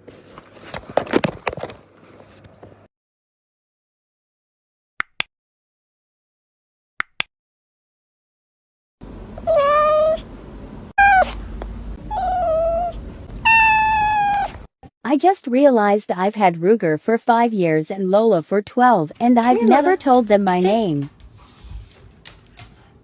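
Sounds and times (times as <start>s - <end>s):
kitten meowing: 9.4s - 10.2s, 11.0s - 11.4s, 12.1s - 14.6s.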